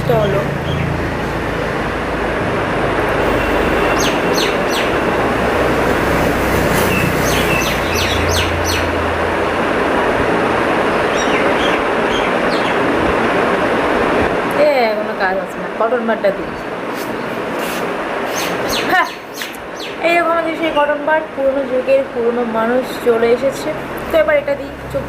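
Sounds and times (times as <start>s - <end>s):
birds chirping: 0.0s - 1.3s, 3.2s - 5.2s, 6.7s - 9.1s, 10.9s - 13.0s, 17.0s - 20.3s
steady rushing noise: 0.0s - 25.0s.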